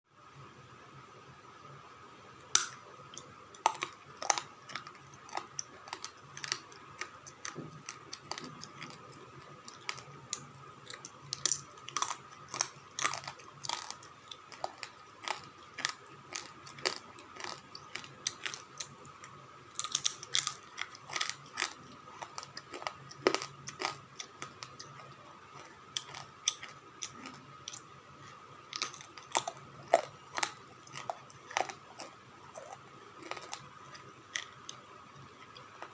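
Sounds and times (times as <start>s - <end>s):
faint steady hum: 0.1s - 35.9s
slate pencils crunching and snapping: 9.7s - 18.9s, 19.8s - 24.0s, 33.2s - 33.6s.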